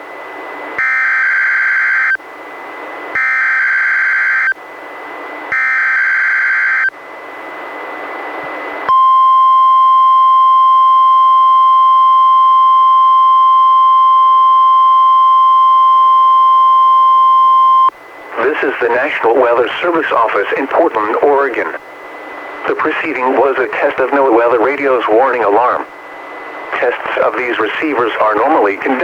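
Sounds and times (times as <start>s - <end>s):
steady alarm tone: 0.8s - 2.2s, 3.1s - 4.6s, 5.5s - 7.0s.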